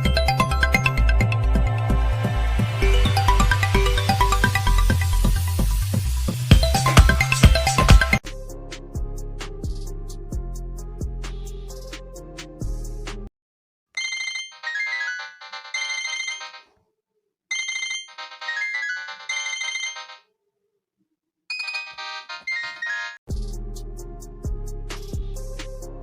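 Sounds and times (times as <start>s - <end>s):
phone ringtone melody: 0.0s - 1.8s, 2.8s - 5.2s, 6.5s - 8.2s, 14.0s - 16.7s, 17.5s - 20.2s, 21.5s - 23.2s
background music with drums: 0.3s - 13.3s.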